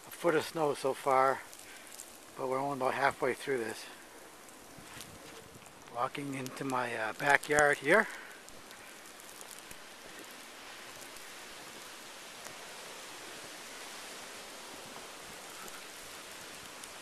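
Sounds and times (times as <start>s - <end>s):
hiss of heavy snow: 0.0s - 17.0s
faint ticks: 4.8s - 17.0s.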